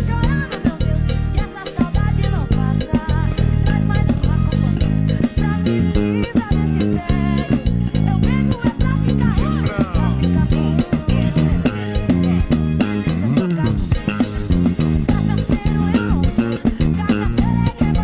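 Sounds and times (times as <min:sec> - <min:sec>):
drums: 0:00.0 - 0:18.0
electric bass guitar: 0:00.0 - 0:18.0
guitar: 0:00.0 - 0:18.0.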